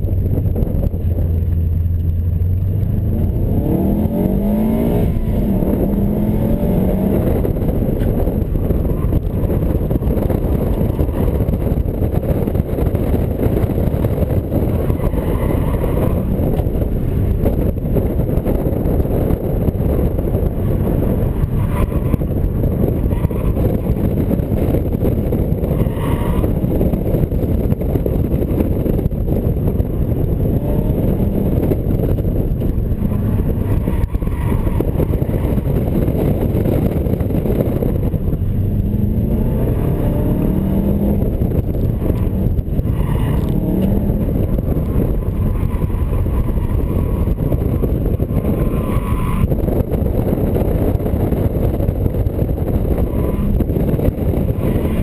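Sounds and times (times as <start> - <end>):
car engine running hard: 0.0 - 55.0
road noise inside car: 0.0 - 55.0.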